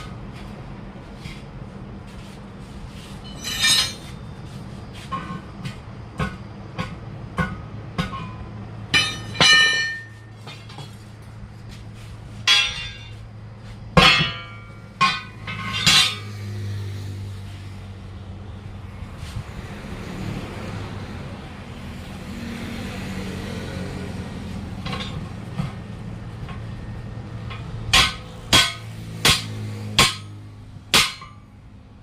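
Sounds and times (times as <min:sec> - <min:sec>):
steady low hum: 0:00.0 - 0:19.9
hammer striking metal: 0:06.2 - 0:10.9, 0:12.5 - 0:13.2, 0:14.0 - 0:16.4, 0:27.4 - 0:31.5.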